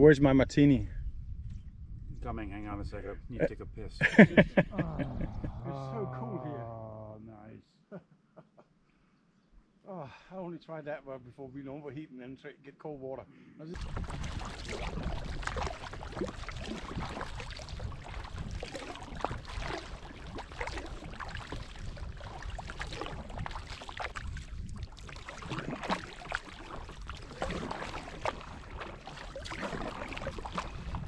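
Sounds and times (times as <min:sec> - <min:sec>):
steady low rumble: 0:00.8 - 0:06.6
paddle splashing in water: 0:13.8 - 0:31.0.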